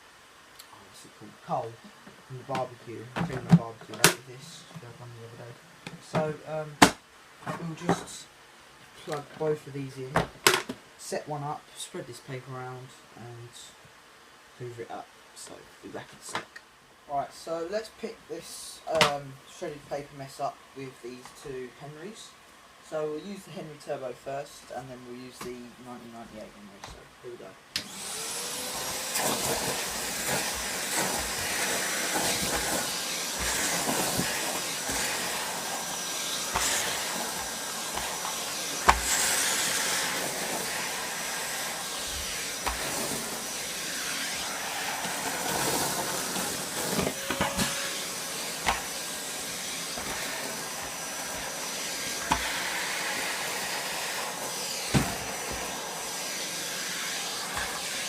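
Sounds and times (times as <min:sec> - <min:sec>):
vacuum cleaner running: 0:27.8 - 0:58.0.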